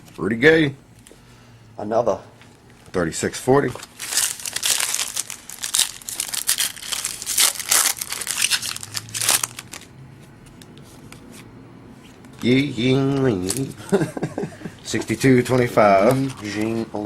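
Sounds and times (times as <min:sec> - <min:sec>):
plastic wrapper crinkling and tearing: 0:03.8 - 0:09.9, 0:12.3 - 0:14.0, 0:15.5 - 0:17.0.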